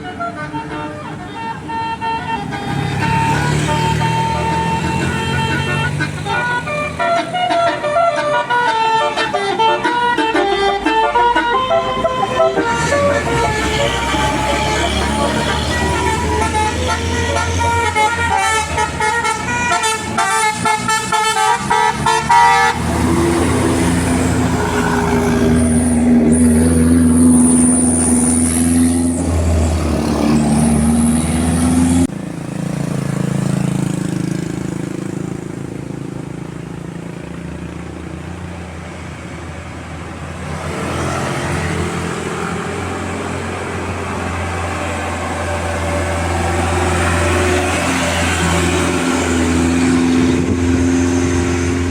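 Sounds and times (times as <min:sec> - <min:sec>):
musical air horn melody: 0:00.0 - 0:32.1
bus engine droning: 0:00.0 - 0:51.9
road noise: 0:00.0 - 0:51.9.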